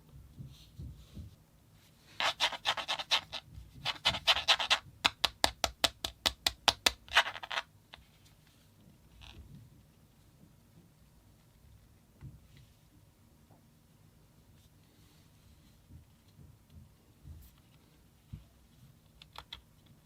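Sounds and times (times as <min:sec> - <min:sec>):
scratchy rubbing of packaging: 0:02.1 - 0:04.8, 0:07.1 - 0:07.7.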